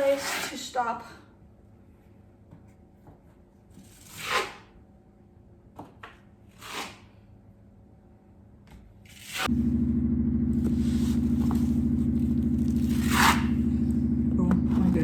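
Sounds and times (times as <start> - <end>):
taping knife scraping compound: 0.0 - 0.8, 3.7 - 4.8, 6.5 - 7.2, 9.0 - 9.5, 12.6 - 13.7.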